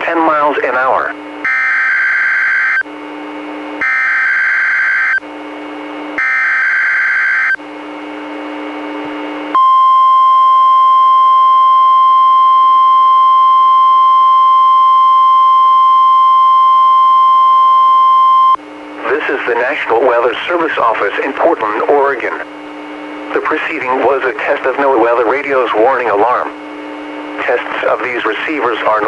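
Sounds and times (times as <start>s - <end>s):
steady warning alarm tone: 1.4s - 3.0s, 3.8s - 5.3s, 6.2s - 7.7s, 9.5s - 22.3s.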